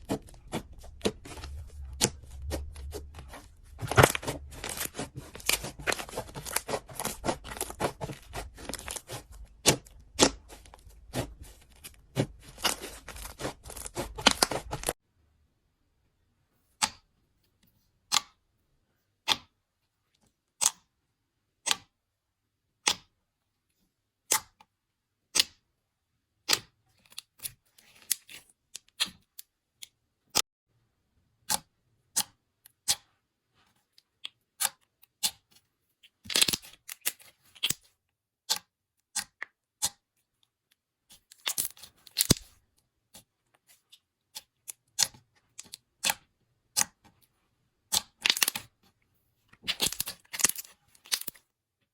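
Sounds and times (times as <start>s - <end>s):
slime crackling: 0.0s - 15.0s.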